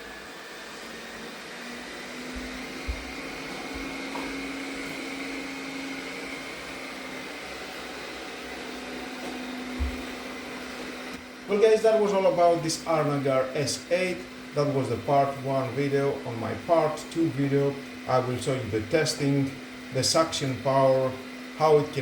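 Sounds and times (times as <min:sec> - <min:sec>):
robot vacuum cleaner humming: 0:00.0 - 0:22.0
low thumps: 0:02.4 - 0:04.0, 0:09.8 - 0:10.1.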